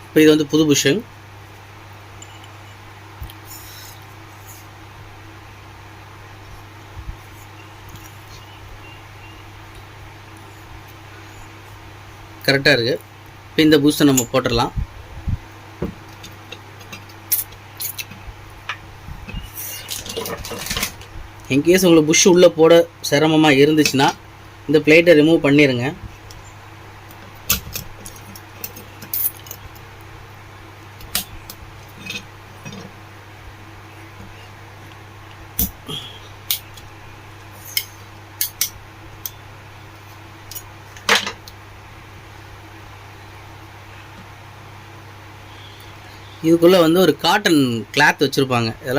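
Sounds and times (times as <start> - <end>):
steady low hum: 0.0 - 48.9
metal parts clicking: 27.5 - 29.6.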